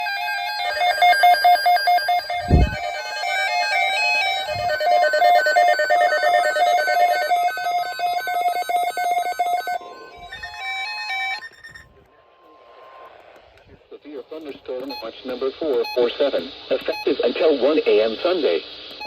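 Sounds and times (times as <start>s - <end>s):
steady high tone: 0.0s - 13.1s
overlapping electronic alert beeps: 0.6s - 2.8s.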